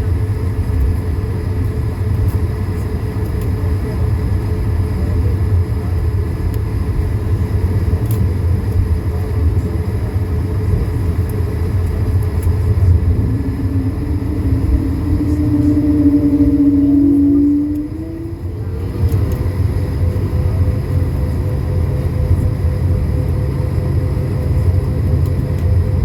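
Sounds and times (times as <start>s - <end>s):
aircraft cabin low rumble: 0.0s - 26.0s
faint engine whine: 0.0s - 26.0s
humming tone: 12.4s - 26.0s.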